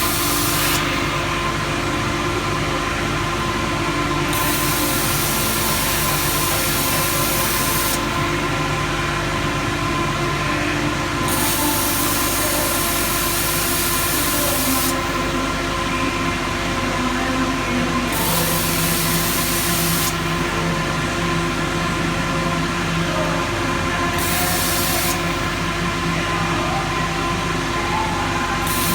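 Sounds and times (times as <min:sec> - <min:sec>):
loud hiss: 0:00.0 - 0:01.7, 0:04.3 - 0:08.4, 0:11.2 - 0:15.3, 0:18.1 - 0:20.5, 0:24.2 - 0:26.0, 0:28.6 - 0:28.9
marking machine humming: 0:00.0 - 0:28.9
steady machine tones: 0:00.0 - 0:28.9.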